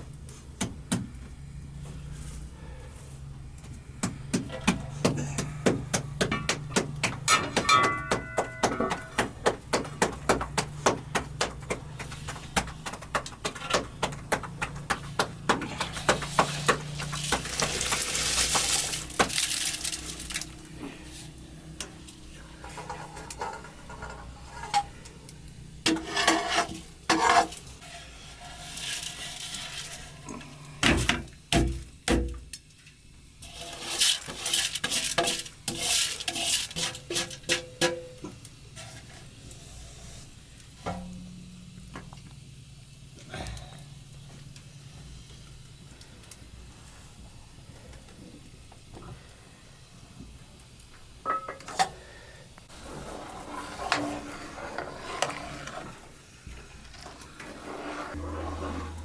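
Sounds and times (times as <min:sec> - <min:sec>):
utensils tapping pots: 0:04.0 - 0:20.7, 0:33.4 - 0:38.4, 0:51.2 - 0:51.9
rushing scrape: 0:33.5 - 0:37.6, 0:52.7 - 0:56.1, 0:56.9 - 0:59.0.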